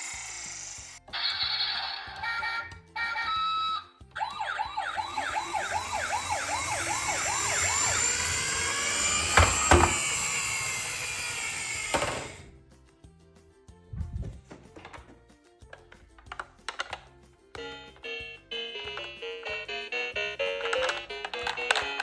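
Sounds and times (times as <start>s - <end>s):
toy siren warbling yelp: 1.1s - 12.0s
knocks: 5.0s - 10.8s, 11.6s - 12.4s.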